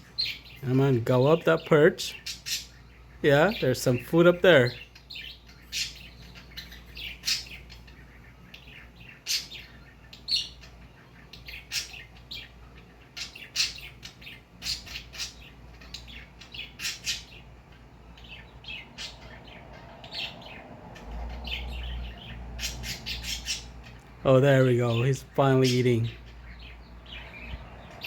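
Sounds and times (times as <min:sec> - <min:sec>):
cockatiel chirping and squawking: 0:02.1 - 0:03.2, 0:04.7 - 0:24.1.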